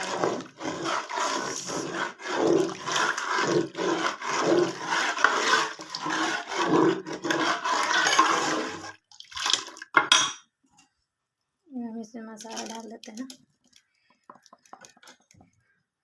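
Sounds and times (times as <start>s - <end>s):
liquid sloshing in pot: 0.0s - 10.0s.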